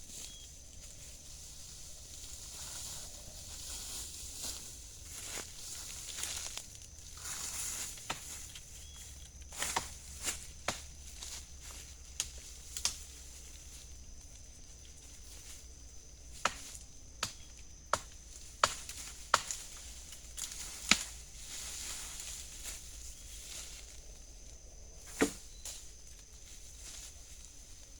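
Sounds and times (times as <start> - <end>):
night insects droning: 0.0 - 27.9
sharp snaps and knocks: 7.8 - 8.7, 9.5 - 11.4, 12.1 - 13.2, 16.3 - 21.2, 25.1 - 26.2.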